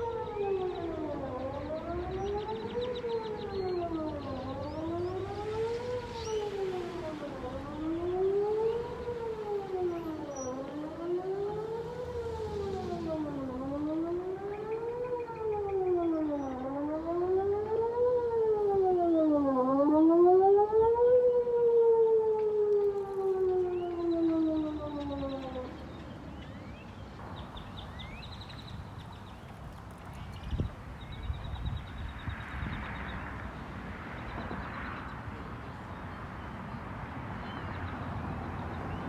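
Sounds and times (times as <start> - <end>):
distant warning siren wailing: 0.0 - 39.0.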